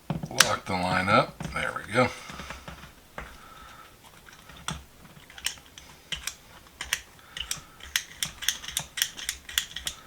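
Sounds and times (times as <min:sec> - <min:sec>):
small ratchet parts clicking: 0:04.3 - 0:10.0.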